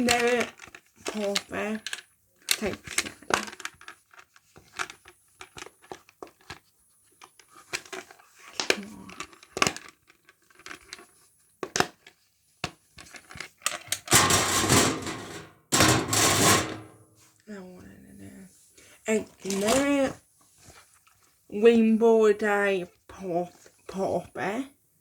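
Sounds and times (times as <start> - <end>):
crinkling rustle: 0.0 - 15.4, 18.6 - 21.5, 22.9 - 24.0.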